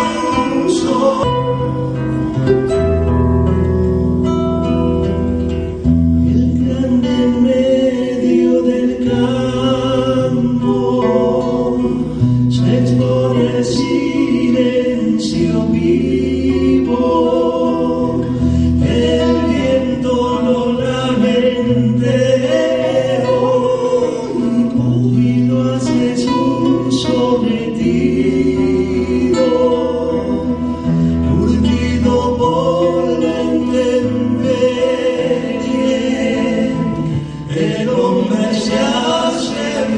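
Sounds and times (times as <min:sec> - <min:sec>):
voices singing in close harmony: 0:00.0 - 0:02.4, 0:06.3 - 0:39.9
guitar accompaniment: 0:00.0 - 0:39.9.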